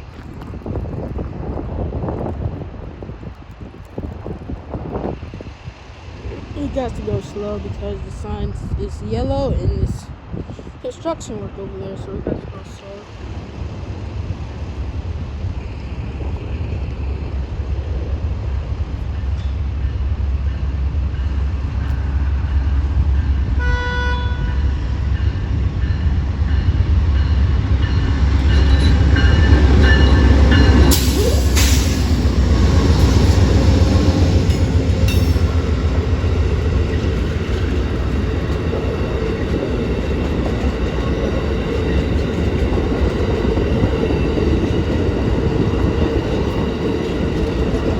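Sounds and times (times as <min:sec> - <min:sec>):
train rumbling past: 0:00.0 - 0:47.9
train horn toot: 0:23.6 - 0:24.8.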